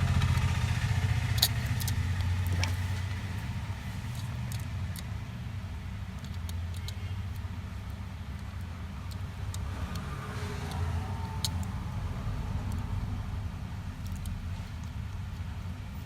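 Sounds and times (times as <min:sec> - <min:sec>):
small tools clicking: 0:01.2 - 0:05.1, 0:06.1 - 0:13.0, 0:13.9 - 0:15.8.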